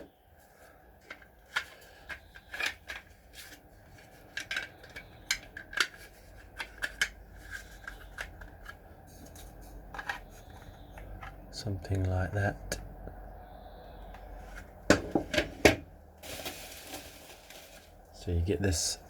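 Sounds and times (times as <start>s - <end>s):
plastic parts clicking: 1.0s - 11.4s.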